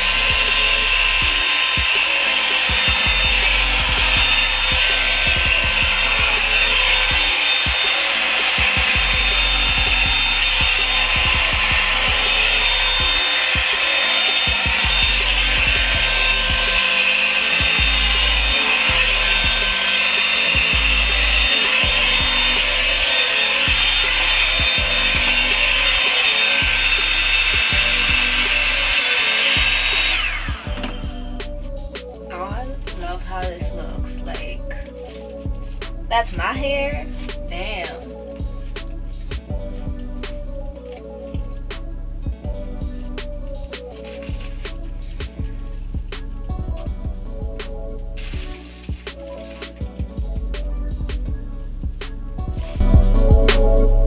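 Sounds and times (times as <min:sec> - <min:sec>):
hair dryer brush whine: 0:00.0 - 0:40.0
background music with bass beat: 0:00.0 - 0:54.0.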